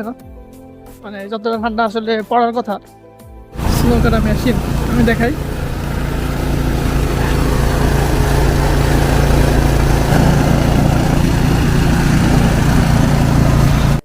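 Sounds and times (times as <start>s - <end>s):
snow-clearing machine engine: 3.6s - 14.0s.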